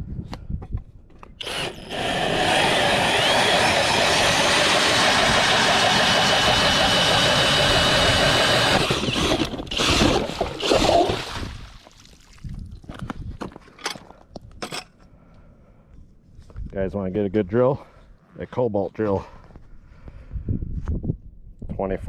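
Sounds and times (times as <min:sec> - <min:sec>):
cordless drill grinding ice: 0:01.4 - 0:11.7.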